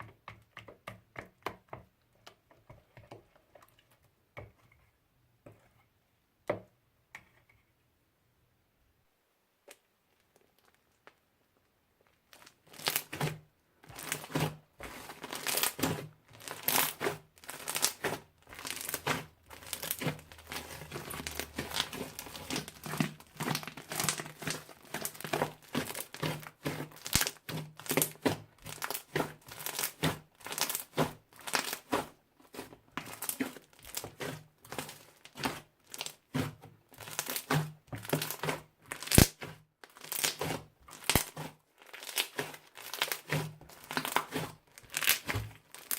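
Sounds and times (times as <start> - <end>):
crunchy slime crackling: 12.2 - 45.9.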